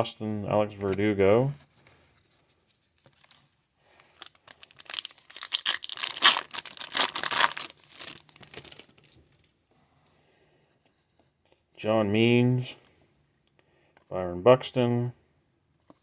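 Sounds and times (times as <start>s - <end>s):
foil wrapper tearing and crinkling: 4.1s - 9.2s.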